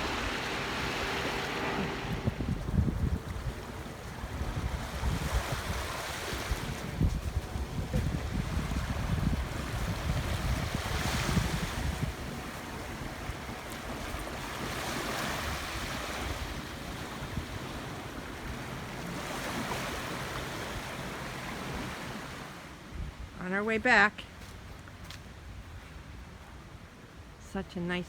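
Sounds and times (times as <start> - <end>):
wind buffeting microphone: 0.0 - 21.9.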